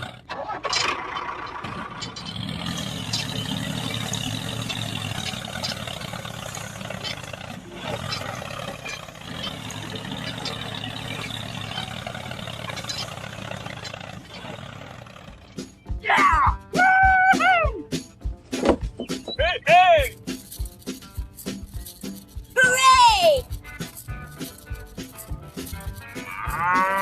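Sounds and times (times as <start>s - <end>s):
motor humming: 2.1s - 15.6s.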